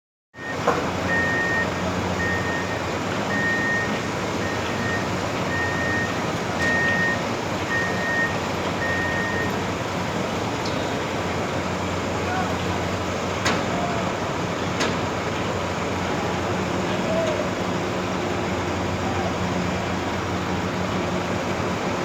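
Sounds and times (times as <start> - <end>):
warning alarm beeping: 0.4 - 9.7
heavy machine engine running: 0.4 - 22.0.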